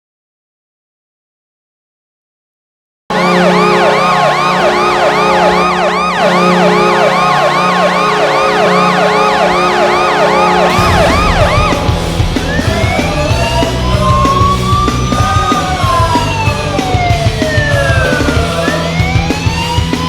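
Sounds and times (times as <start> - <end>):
air horn chord: 3.1 - 15.1
siren wailing: 3.1 - 20.0
rock music: 3.2 - 20.0.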